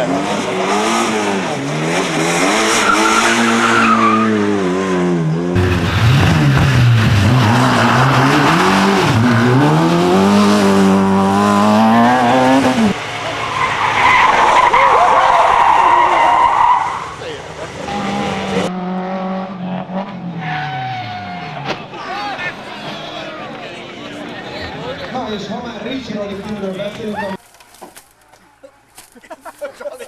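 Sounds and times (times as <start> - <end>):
car engine revving hard: 0.0 - 14.4, 16.0 - 21.4.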